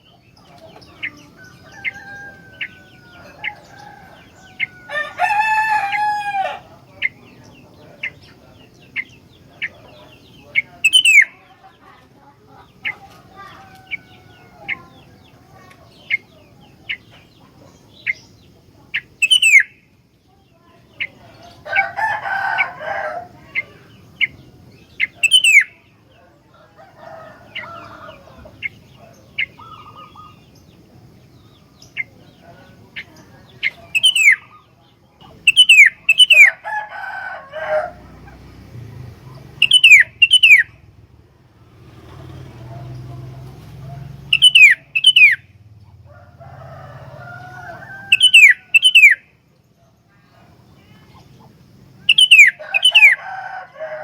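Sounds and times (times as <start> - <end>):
bird chirping and whistling: 10.8 - 11.3, 19.2 - 19.8, 25.0 - 25.8, 34.0 - 34.5, 35.5 - 36.5, 39.6 - 40.8, 44.3 - 45.4, 48.1 - 49.2, 52.1 - 53.2
harsh bird call bursts: 10.8 - 11.4, 19.0 - 19.8, 21.8 - 25.8, 33.6 - 34.7, 35.4 - 36.7, 39.6 - 40.8, 44.1 - 45.5, 47.8 - 49.3, 52.0 - 53.2.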